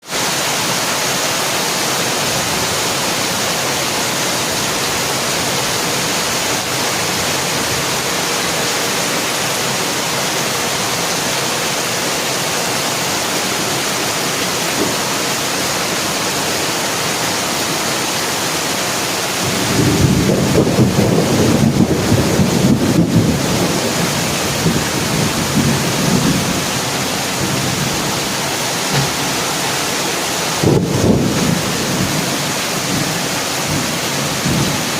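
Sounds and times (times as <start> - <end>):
heavy rain hissing: 0.0 - 34.9
thunder rumbling: 19.4 - 29.7, 30.5 - 34.9.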